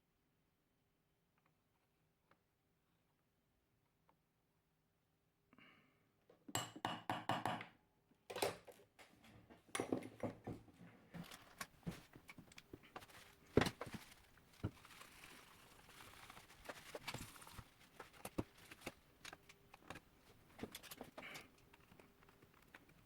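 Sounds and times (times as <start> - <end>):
soldering tools clicking and tapping: 9.7 - 10.5.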